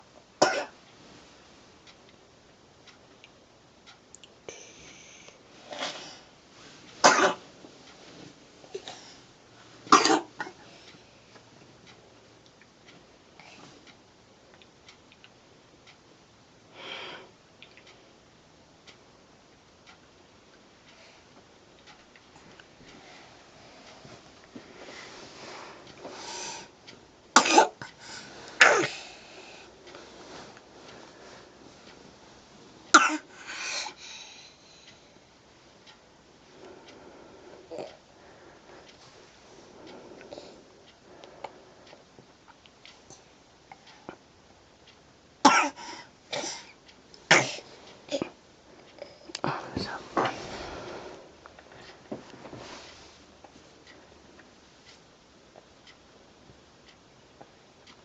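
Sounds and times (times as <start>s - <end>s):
soft breathing: 4.5s - 11.5s, 13.3s - 14.0s, 20.8s - 27.0s, 27.8s - 44.3s, 45.8s - 55.1s
loud coughs: 9.9s - 10.6s, 45.5s - 45.8s
person coughing: 9.9s - 10.6s, 27.4s - 27.8s, 28.6s - 29.1s, 32.9s - 33.9s, 45.5s - 46.7s, 47.3s - 48.3s.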